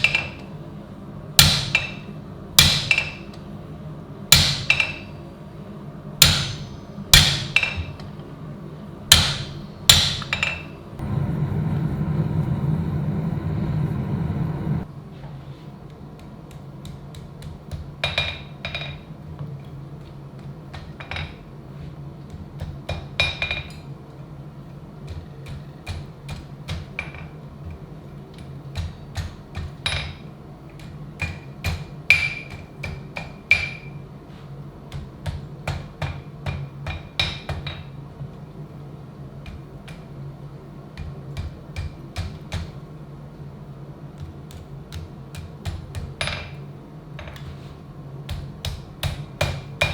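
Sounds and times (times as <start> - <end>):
hammer striking steel: 0.0 - 0.5, 1.4 - 3.4, 4.3 - 5.2, 6.2 - 8.1, 9.1 - 10.8, 28.8 - 34.0, 48.6 - 49.9
steady low hum: 0.0 - 17.0.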